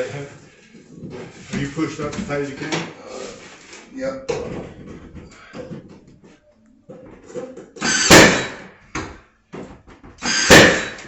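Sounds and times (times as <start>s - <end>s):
nail gun firing: 7.8s - 8.6s, 10.2s - 11.0s.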